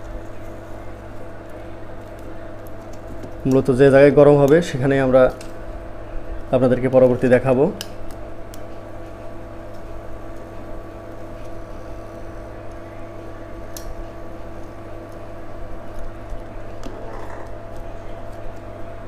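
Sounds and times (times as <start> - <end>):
electrical hum: 0.0 - 19.0.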